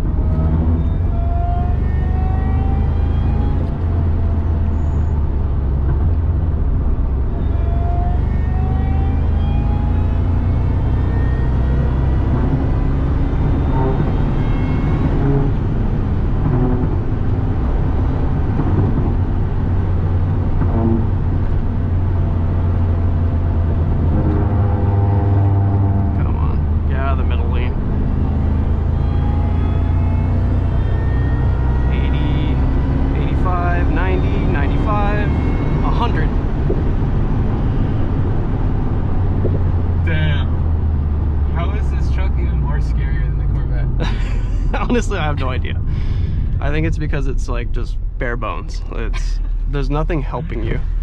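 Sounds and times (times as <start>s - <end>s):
engine drone: 0.0s - 51.0s
supercharger whine: 0.0s - 51.0s.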